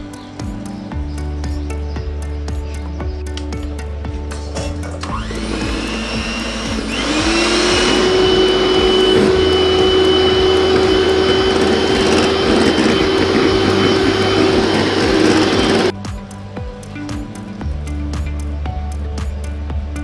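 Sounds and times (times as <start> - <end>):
electric motor whining: 5.1 - 15.9.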